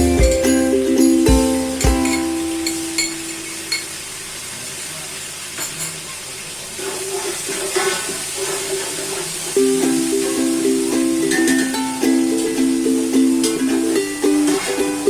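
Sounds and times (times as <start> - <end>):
held musical note: 0.0 - 3.7
food sizzling in a pot: 0.0 - 15.0
spoon clinking against pot: 2.0 - 3.9.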